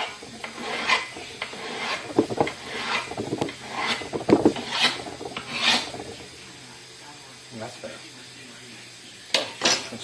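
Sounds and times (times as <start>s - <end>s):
hand file rasping on steel: 0.4s - 6.2s.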